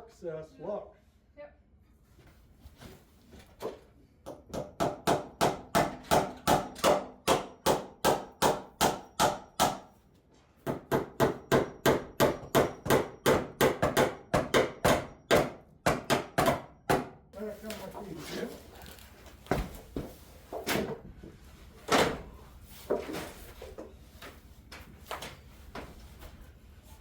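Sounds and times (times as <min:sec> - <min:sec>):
hammer driving nails into wood: 0:04.3 - 0:09.9, 0:10.6 - 0:17.2.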